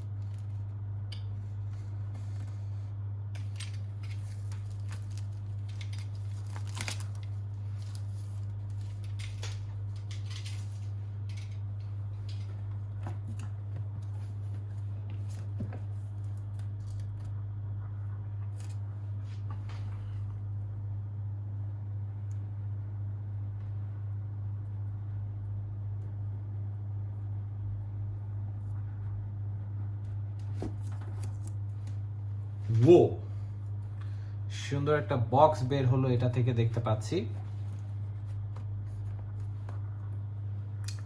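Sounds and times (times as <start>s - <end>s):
steady low hum: 0.0s - 41.0s
packaging crinkling and rustling: 3.4s - 17.3s.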